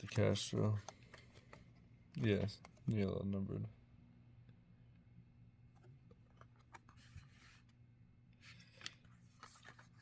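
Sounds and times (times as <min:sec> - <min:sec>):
low steady hum: 0:00.0 - 0:10.0
trading cards rustling and sliding: 0:06.3 - 0:07.8, 0:08.4 - 0:10.0.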